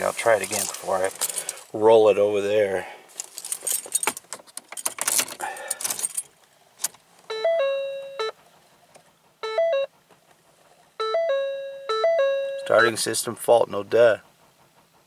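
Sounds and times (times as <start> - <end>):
car keys jangling: 0.4 - 1.7, 3.1 - 8.2
dashboard warning chime: 7.3 - 8.4, 9.4 - 10.0, 11.0 - 13.3.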